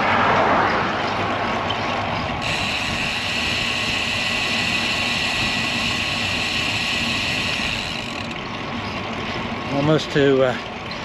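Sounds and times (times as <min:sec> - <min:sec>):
wind and road noise: 0:00.0 - 0:11.0.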